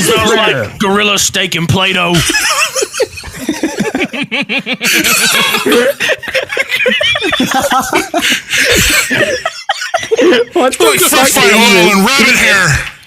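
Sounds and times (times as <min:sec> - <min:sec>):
people laughing hard: 0:02.1 - 0:11.4.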